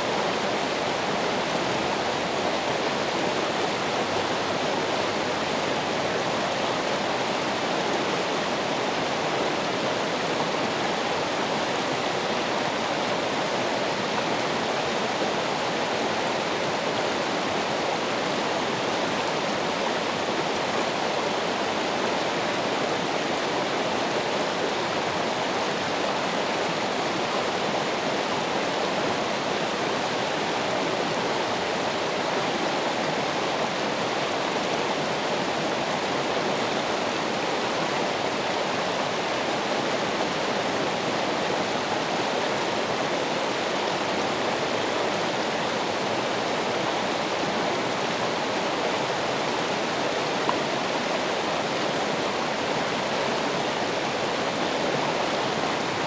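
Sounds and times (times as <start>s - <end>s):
running water: 0.0s - 56.0s.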